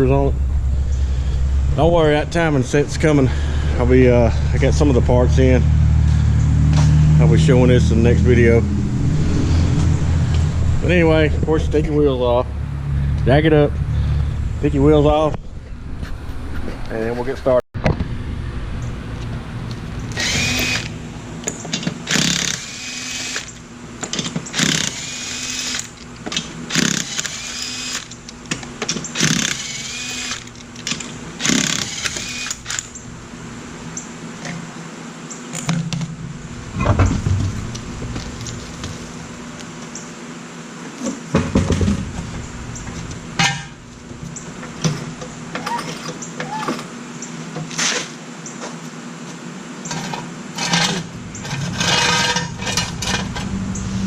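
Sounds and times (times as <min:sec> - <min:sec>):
impact wrench bursts: 0:20.1 - 0:21.0, 0:21.8 - 0:28.3, 0:28.9 - 0:33.0
knocks and thuds: 0:36.8 - 0:37.7, 0:41.3 - 0:42.3.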